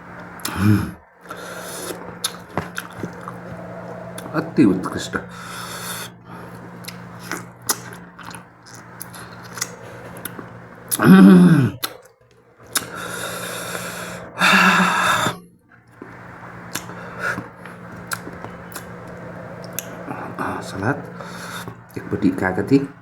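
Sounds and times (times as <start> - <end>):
steady low hum: 0.0 - 23.0
chewing and mouth smacks: 1.2 - 4.3, 6.8 - 11.0, 11.8 - 13.0, 15.9 - 20.1.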